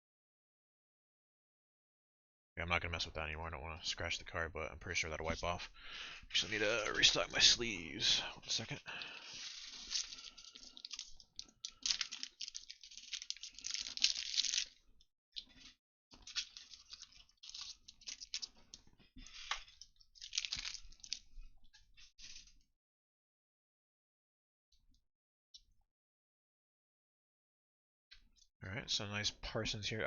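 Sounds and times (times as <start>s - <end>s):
plastic packaging crinkling: 9.0s - 14.8s, 15.4s - 21.3s.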